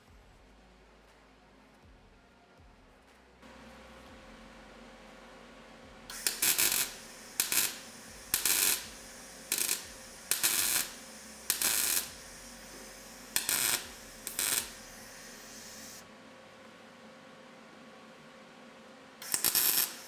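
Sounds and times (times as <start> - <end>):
welder crackling bursts: 6.1 - 16.0, 19.2 - 20.0.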